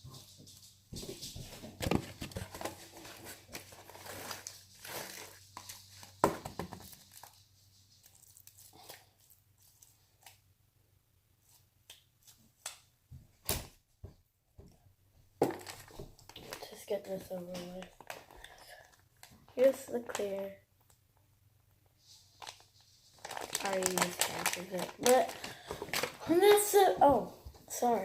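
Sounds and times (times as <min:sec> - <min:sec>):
rustling and crinkling: 0:00.0 - 0:10.4, 0:15.4 - 0:21.0, 0:21.8 - 0:28.0.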